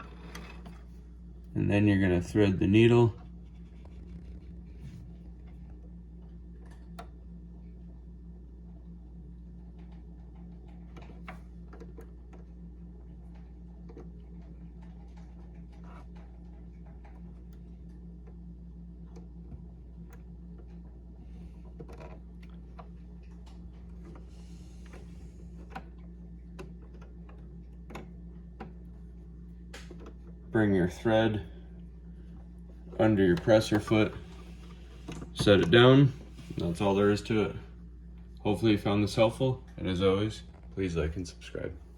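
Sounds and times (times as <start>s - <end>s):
steady low hum: 0.0s - 41.9s
small clicks and taps at sewing machine: 9.7s - 18.4s, 21.7s - 29.0s.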